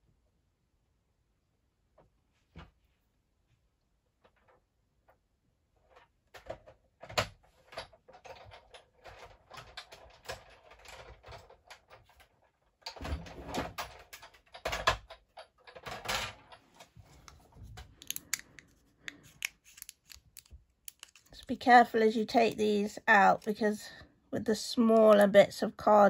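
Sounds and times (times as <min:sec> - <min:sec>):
small clicks and knocks: 0:05.9 - 0:21.5.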